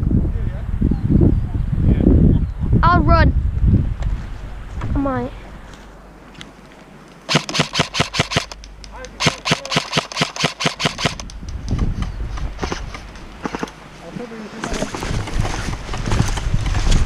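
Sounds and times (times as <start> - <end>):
airsoft rifle full-auto bursts: 7.3 - 8.6, 9.2 - 11.3.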